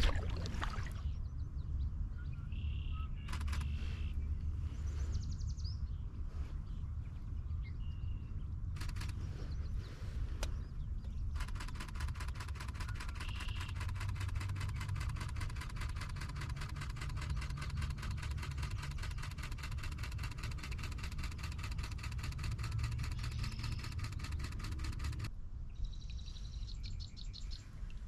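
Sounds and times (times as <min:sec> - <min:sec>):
low steady rumble: 0:00.0 - 0:28.0
camera shutter burst: 0:03.2 - 0:03.9, 0:11.4 - 0:25.3.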